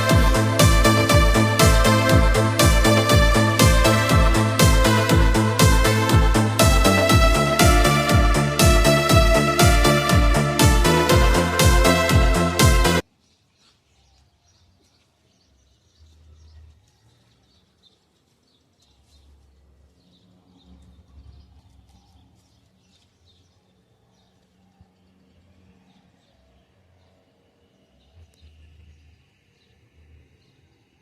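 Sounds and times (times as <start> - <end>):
electronic background music: 0.0 - 13.0.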